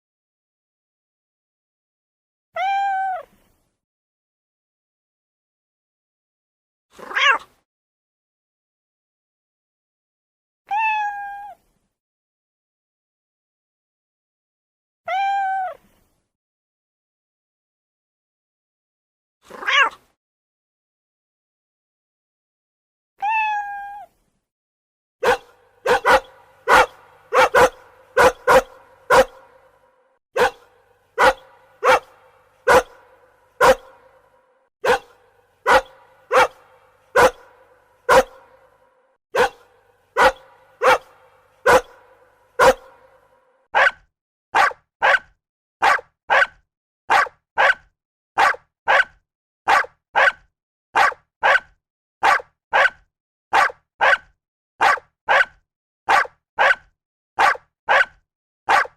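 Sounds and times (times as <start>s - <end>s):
dog whining: 25.2s - 29.7s, 30.4s - 34.2s, 34.8s - 38.6s, 39.4s - 39.6s, 40.2s - 42.9s
dog barking: 25.2s - 58.9s.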